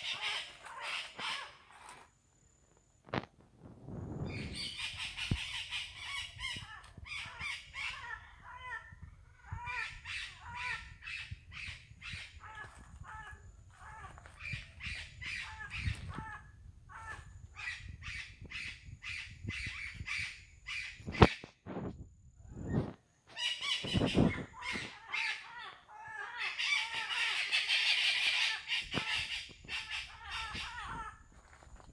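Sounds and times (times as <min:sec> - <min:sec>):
parrots squawking: 0:00.0 - 0:02.0, 0:04.3 - 0:18.2, 0:23.4 - 0:31.2.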